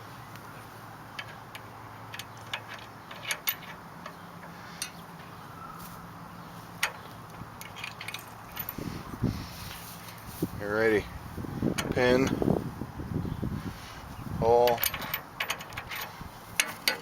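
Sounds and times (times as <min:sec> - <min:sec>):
metal clicks and clinks: 0:01.1 - 0:05.3, 0:06.8 - 0:08.8, 0:14.6 - 0:17.0.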